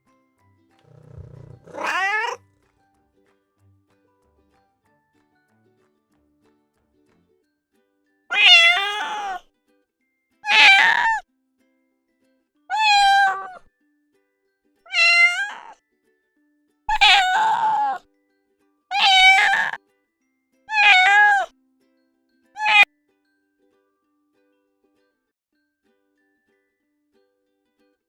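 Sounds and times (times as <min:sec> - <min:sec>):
cat meowing: 0:00.9 - 0:02.4, 0:08.3 - 0:09.4, 0:10.4 - 0:11.2, 0:12.7 - 0:13.6, 0:14.9 - 0:15.8, 0:16.9 - 0:18.0, 0:18.9 - 0:19.8, 0:20.7 - 0:21.5, 0:22.6 - 0:22.9.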